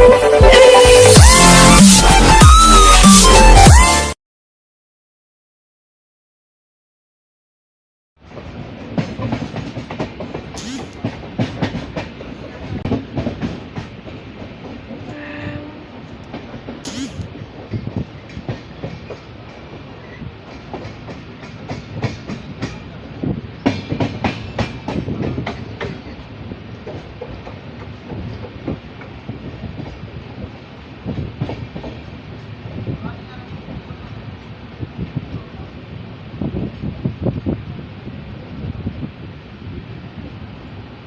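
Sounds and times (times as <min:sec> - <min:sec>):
train running rumble: 0:08.2 - 0:41.0.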